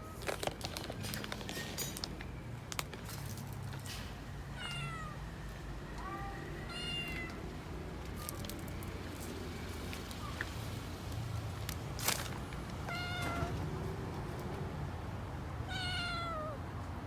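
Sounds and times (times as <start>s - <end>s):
kitten meowing: 4.6s - 5.2s, 6.0s - 7.4s, 12.9s - 13.6s, 15.7s - 16.6s.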